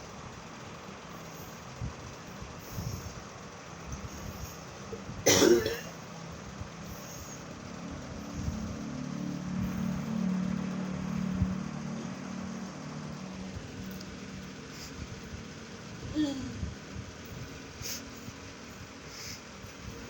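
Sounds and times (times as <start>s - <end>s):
person coughing: 5.2s - 6.0s
low drone: 6.4s - 19.8s.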